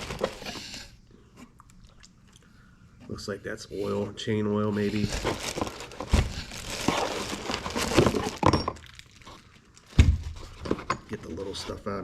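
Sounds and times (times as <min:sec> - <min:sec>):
cardboard rustling and crinkling: 0:00.0 - 0:00.9, 0:03.8 - 0:12.0.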